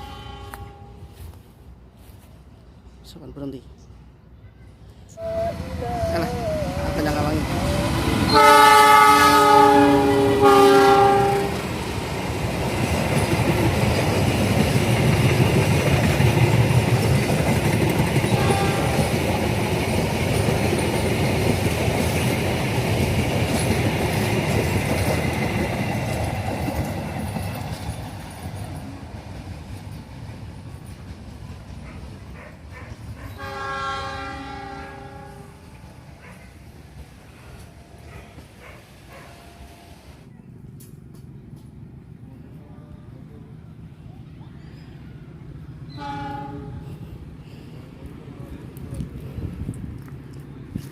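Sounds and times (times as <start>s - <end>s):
locomotive air horn: 0.0s - 1.3s, 5.2s - 11.6s, 18.4s - 19.1s, 33.4s - 35.7s, 46.0s - 47.1s
train wheels clattering: 11.6s - 33.4s.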